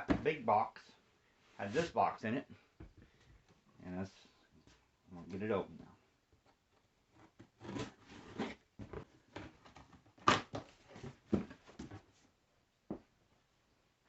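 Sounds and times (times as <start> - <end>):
cardboard box scraping and rustling: 7.5 - 8.6.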